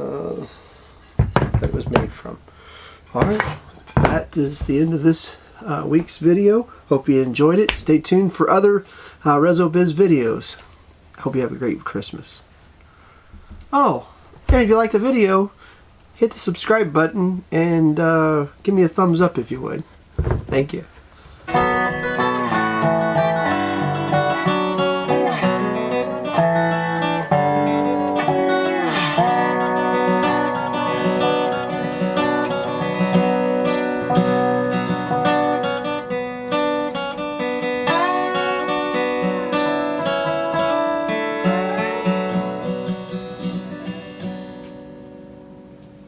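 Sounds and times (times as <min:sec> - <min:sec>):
resonator guitar with slides: 0:21.5 - 0:44.9.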